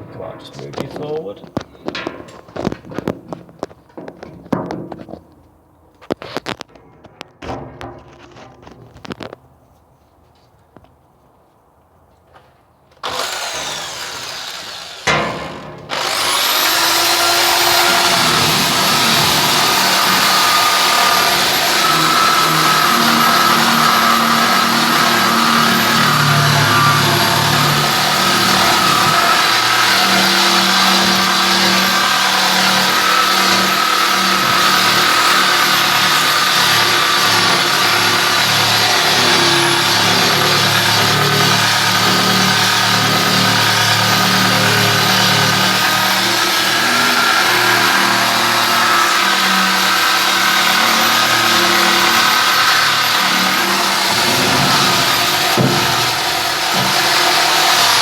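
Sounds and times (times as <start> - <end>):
electric drill motor whine: 13.0 - 58.0.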